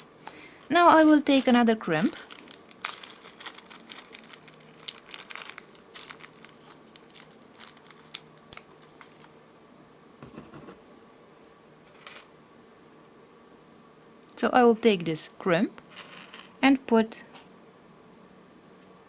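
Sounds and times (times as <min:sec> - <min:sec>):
jewelry findings rustling and clicking: 0:00.3 - 0:09.4, 0:15.9 - 0:16.6.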